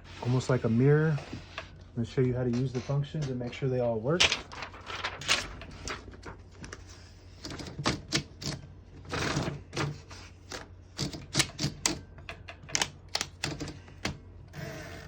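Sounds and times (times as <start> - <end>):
typewriter clacking: 11.0 - 12.0.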